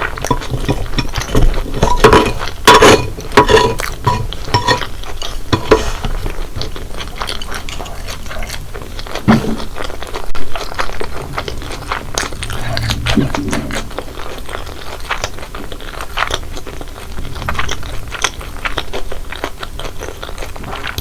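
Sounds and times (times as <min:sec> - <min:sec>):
cutlery clinking against bowl: 0:00.0 - 0:08.6.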